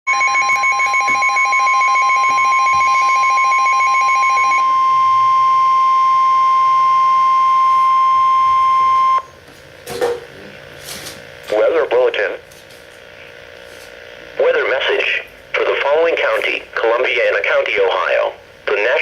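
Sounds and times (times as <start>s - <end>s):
rapidly pulsing beep: 0.1s - 9.3s
steady single alarm tone: 0.1s - 9.4s.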